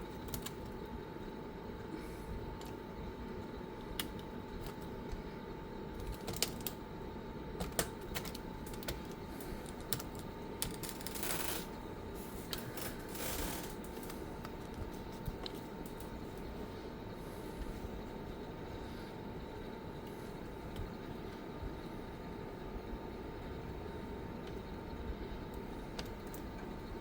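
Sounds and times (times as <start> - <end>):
steady low hum: 0.0 - 27.0
laptop parts clicking and tapping: 6.0 - 6.8, 7.6 - 11.4.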